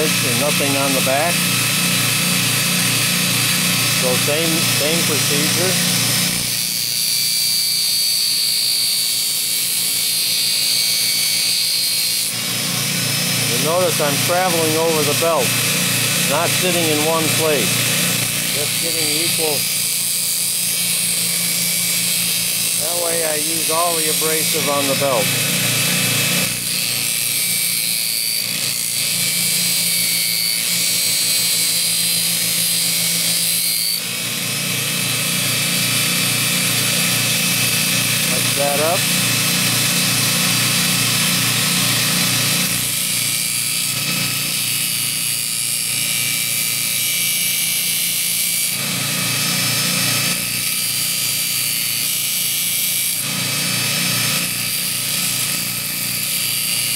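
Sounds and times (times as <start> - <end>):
motor hum: 0.0 - 7.0, 12.3 - 45.0
belt grinder grinding steel: 0.0 - 56.9.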